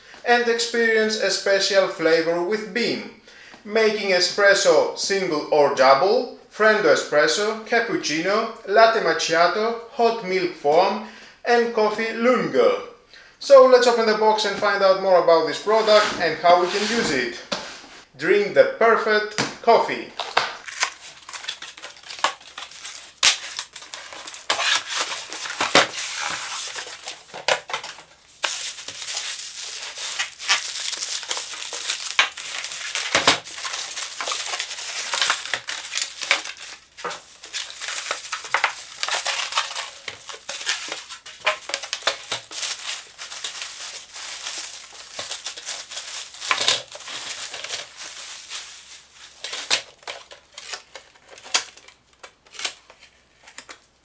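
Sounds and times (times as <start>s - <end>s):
cardboard and wrapping rustling: 13.8s - 18.1s, 19.4s - 54.0s.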